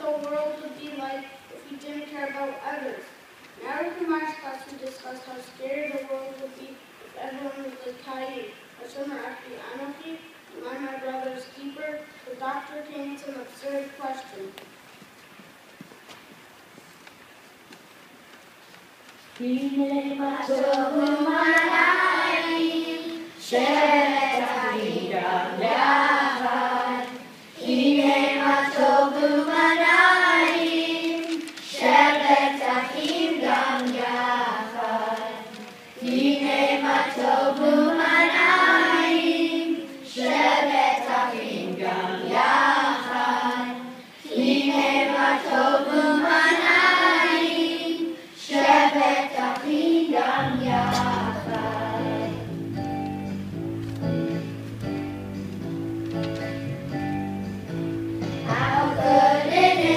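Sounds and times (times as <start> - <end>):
children's choir singing: 19.4 - 52.6, 58.4 - 59.9.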